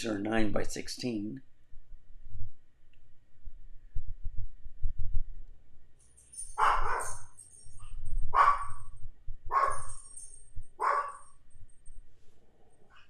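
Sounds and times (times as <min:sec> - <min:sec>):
dog barking: 0:06.6 - 0:07.2, 0:08.3 - 0:08.9, 0:09.5 - 0:09.9, 0:10.8 - 0:11.3.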